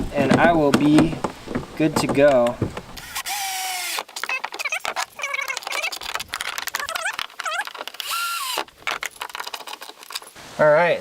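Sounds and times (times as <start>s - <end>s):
drill clicks: 0.3s - 10.4s
power drill motor whine: 3.0s - 4.0s, 8.0s - 8.6s.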